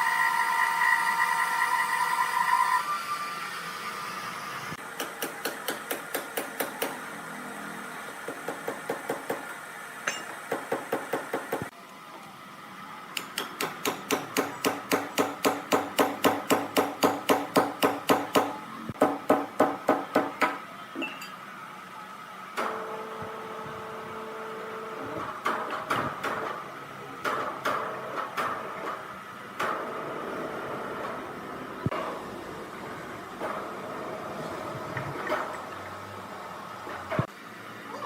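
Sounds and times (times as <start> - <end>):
rapid hammer-like strikes: 13.2 - 20.6.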